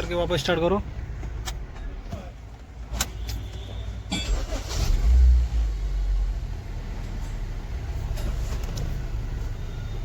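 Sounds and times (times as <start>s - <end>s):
car engine starting and idling: 4.1s - 10.0s.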